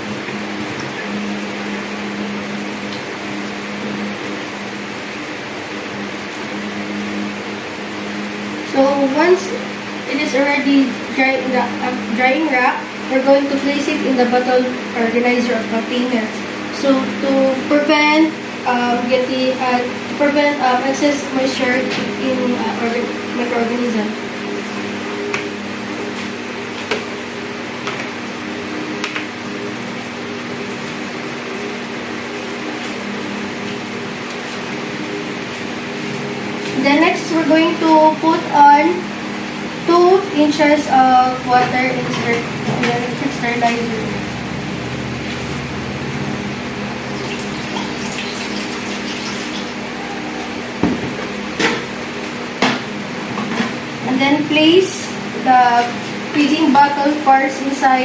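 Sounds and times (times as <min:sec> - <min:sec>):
air conditioner hum: 0:00.0 - 0:58.0
water running into a pot: 0:47.0 - 0:50.0.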